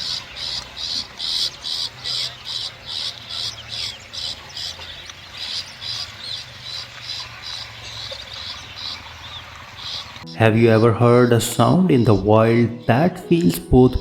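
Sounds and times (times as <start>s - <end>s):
shrike harsh rasping notes: 10.2s - 14.0s.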